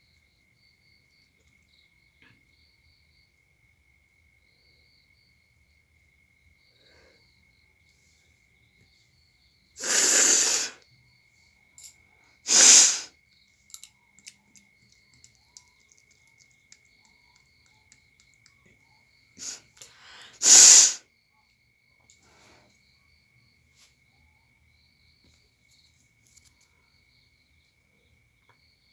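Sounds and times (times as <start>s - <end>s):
woman blowing air through nose: 9.8s - 10.8s, 12.5s - 13.1s, 19.4s - 21.0s.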